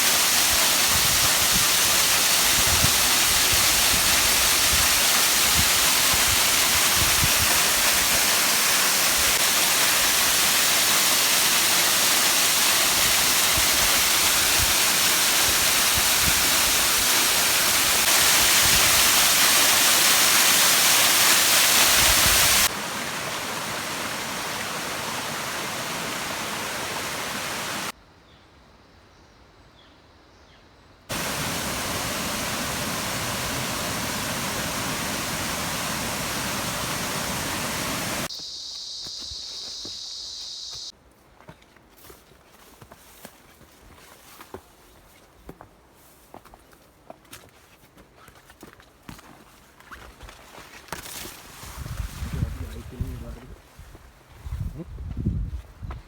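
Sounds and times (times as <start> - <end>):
hiss of rushing water: 0.0 - 27.9, 31.1 - 40.9.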